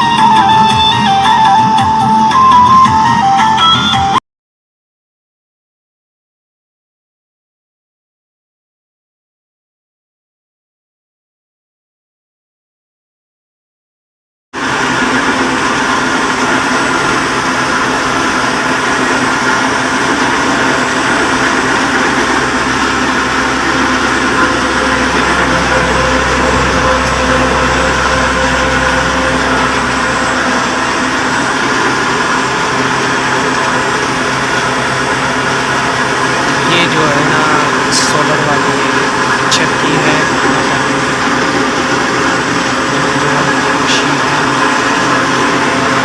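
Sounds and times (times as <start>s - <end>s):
flour mill mechanical hum: 14.6s - 46.0s
grinding noise: 14.6s - 46.0s.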